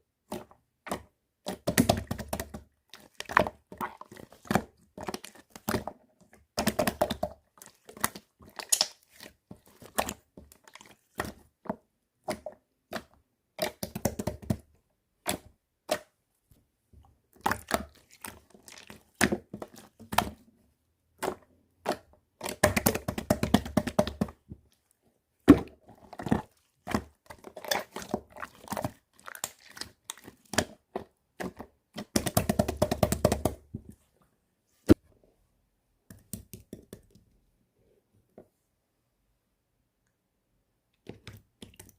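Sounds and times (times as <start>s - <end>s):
slime squished by hand: 0.8s - 11.6s, 25.4s - 33.6s
slime clicking and popping: 8.6s - 9.1s.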